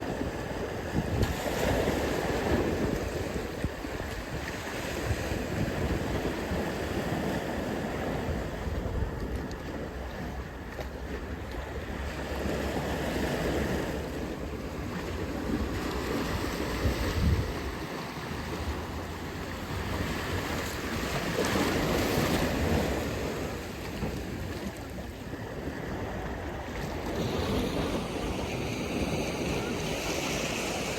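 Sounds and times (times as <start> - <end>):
ocean surf washing: 0.0 - 30.9
waves breaking: 0.0 - 30.9
wind buffeting microphone: 0.0 - 30.9.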